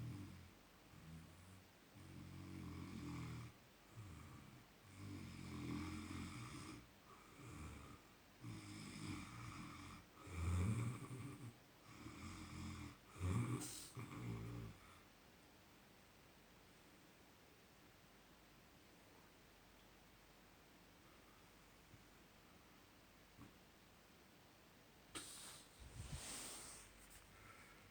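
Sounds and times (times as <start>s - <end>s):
person snoring: 2.0s - 14.8s.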